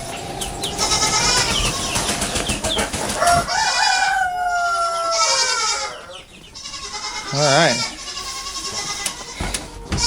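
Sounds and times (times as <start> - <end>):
chickens clucking: 0.0 - 10.0
rooster crowing: 2.7 - 6.9.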